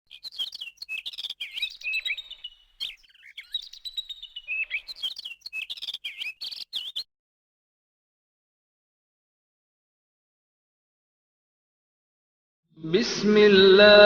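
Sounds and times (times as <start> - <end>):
birds chirping and twittering: 0.1 - 7.1.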